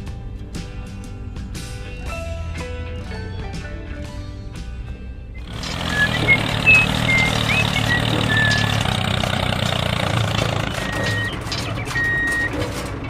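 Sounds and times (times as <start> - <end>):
short high chirps: 5.4 - 8.8
reversing alarm beeping: 5.4 - 9.1, 9.9 - 12.9
heavy vehicle engine running: 5.4 - 13.0.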